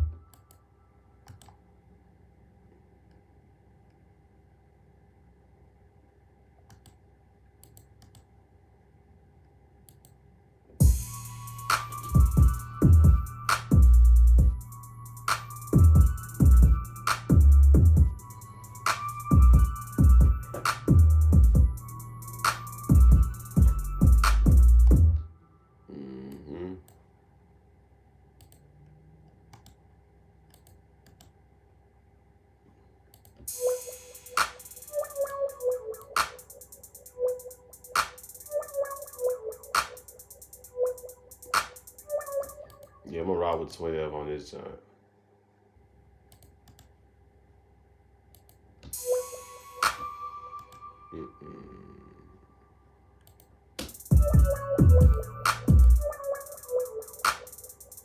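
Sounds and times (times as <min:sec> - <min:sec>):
room hum: 0:00.0 - 0:58.0
electronic hip-hop beat: 0:10.8 - 0:25.2, 0:33.5 - 0:43.7, 0:48.9 - 0:51.6, 0:53.8 - 0:58.0.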